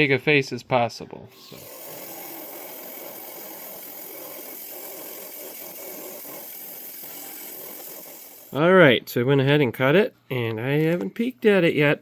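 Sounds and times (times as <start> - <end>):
rock saw cutting stone: 1.4 - 8.6.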